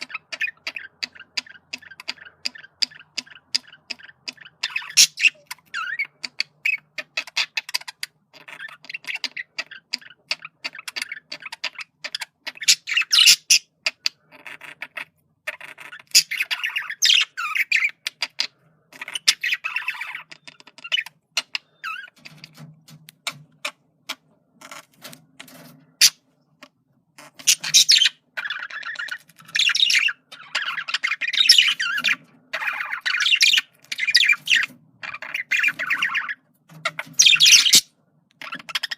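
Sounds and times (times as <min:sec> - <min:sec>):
budgerigar chattering: 0:00.0 - 0:22.4, 0:27.2 - 0:38.9.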